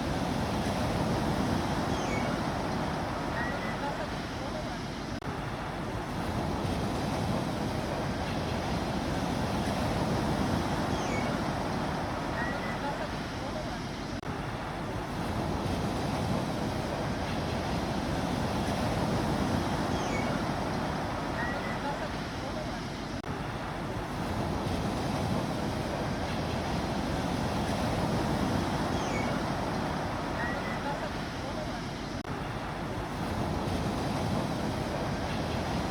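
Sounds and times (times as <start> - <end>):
wind noise: 0.0 - 4.3
sea waves rushing: 0.0 - 35.9.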